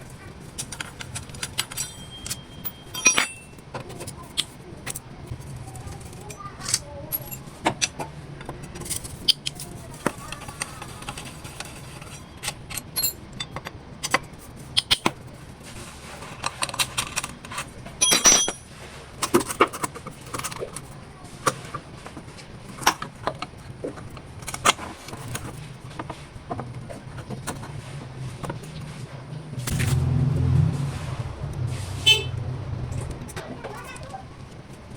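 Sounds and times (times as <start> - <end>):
metal parts and tools clinking: 0.5 - 5.0, 6.2 - 8.0, 11.6 - 14.2, 16.8 - 19.8
steady low hum: 29.1 - 34.8.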